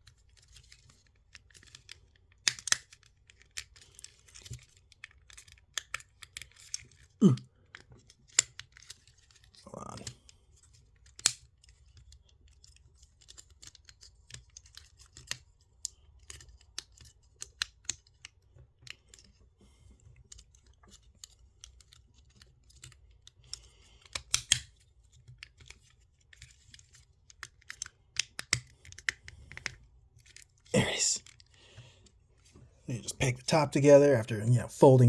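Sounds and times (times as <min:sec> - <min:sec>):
plastic toy parts clicking: 0:00.2 - 0:07.1, 0:07.7 - 0:10.1, 0:11.0 - 0:19.2, 0:20.3 - 0:30.4.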